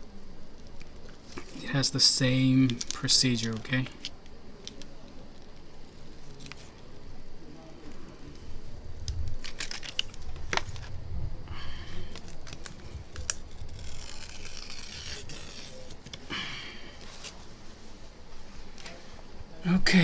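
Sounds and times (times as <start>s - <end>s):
plastic film rustling: 7.8s - 11.0s, 12.0s - 16.3s.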